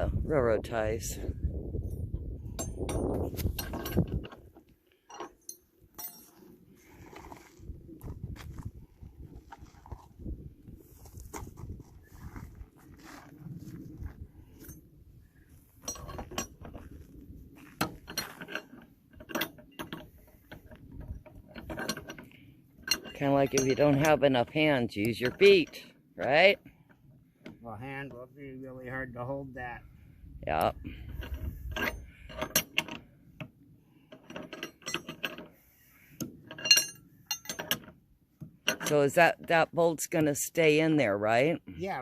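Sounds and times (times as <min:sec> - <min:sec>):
metallic clinks and knocks: 0:01.8 - 0:06.5, 0:15.8 - 0:17.0, 0:17.7 - 0:24.5, 0:31.1 - 0:33.1, 0:34.1 - 0:35.5, 0:36.2 - 0:39.1.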